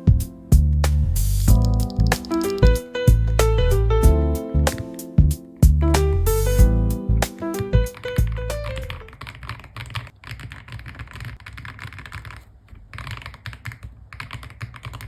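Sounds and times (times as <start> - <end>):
fast mechanical keyboard typing: 1.4 - 2.8, 7.3 - 15.0.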